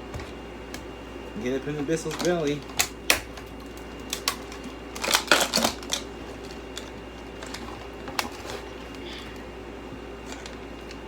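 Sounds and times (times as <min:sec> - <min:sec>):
plastic parts clicking and rattling: 0:02.0 - 0:09.0.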